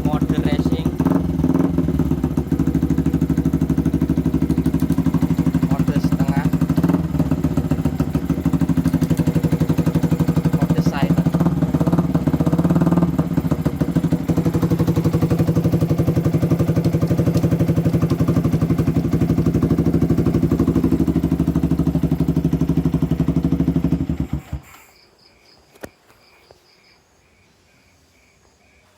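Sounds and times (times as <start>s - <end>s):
motorcycle engine idling: 0.0s - 24.8s
crickets chirping: 24.3s - 28.9s.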